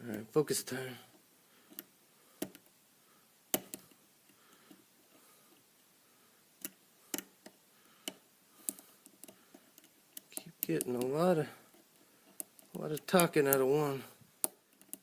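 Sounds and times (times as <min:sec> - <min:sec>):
lock pick clicking on pins: 0:14.4 - 0:15.0.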